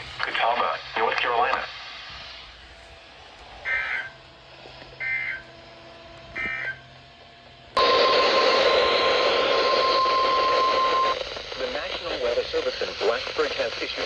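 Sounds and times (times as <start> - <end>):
radio hiss: 0.0 - 3.0, 3.6 - 4.2, 7.8 - 14.0
loud steady alert tone: 7.8 - 11.2
warbling data bursts: 7.8 - 14.0.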